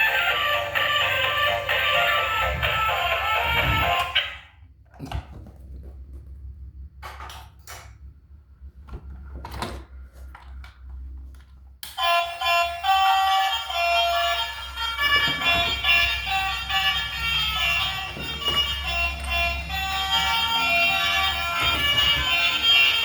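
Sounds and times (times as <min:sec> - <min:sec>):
music: 0:00.0 - 0:04.4, 0:12.0 - 0:23.0
scattered knocks and clicks: 0:17.6 - 0:23.0.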